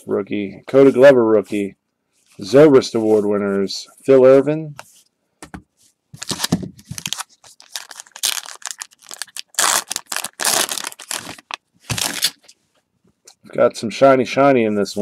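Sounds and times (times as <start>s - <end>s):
foil pack tearing and crinkling: 6.2s - 12.4s.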